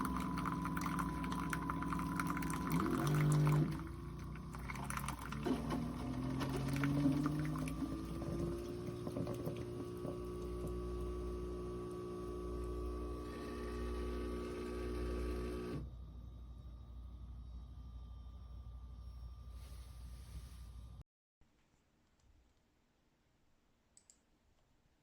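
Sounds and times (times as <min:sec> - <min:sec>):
coffee pouring into cup: 0:00.0 - 0:11.1
coffee maker pump humming: 0:00.0 - 0:16.0.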